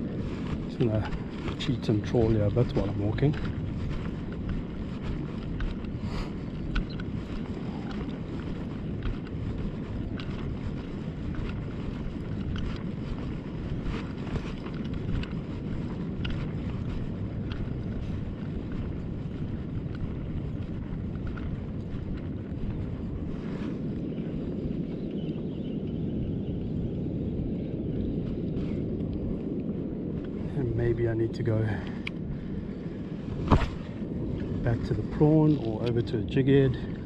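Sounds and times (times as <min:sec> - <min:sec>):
wind buffeting microphone: 0:00.0 - 0:37.0
faint light ticks: 0:02.8 - 0:13.3.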